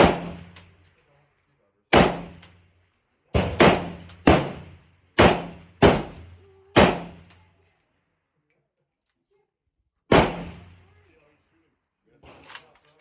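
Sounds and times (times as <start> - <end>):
pistol shots with echo: 0.0 - 0.7, 1.9 - 2.6, 3.4 - 7.4, 10.1 - 11.0.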